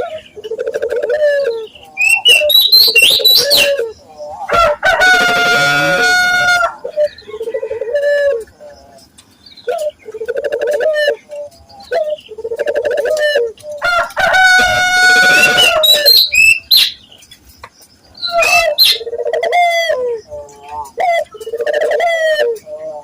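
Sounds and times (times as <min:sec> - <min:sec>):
drawn-out dove call: 0:00.0 - 0:08.6, 0:18.2 - 0:23.0
doves cooing: 0:00.0 - 0:16.9, 0:18.2 - 0:23.0.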